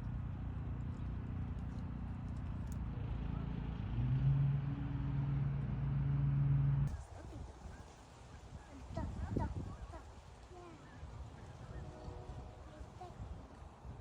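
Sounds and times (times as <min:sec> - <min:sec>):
engine humming: 0:00.0 - 0:07.0.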